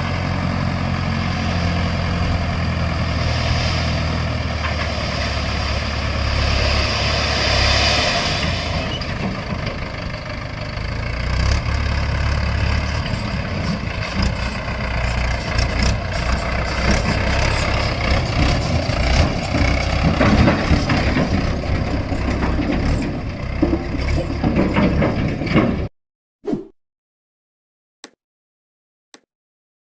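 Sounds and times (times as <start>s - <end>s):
heavy diesel engine running: 0.0s - 25.9s
clattering knocks: 18.4s - 25.9s.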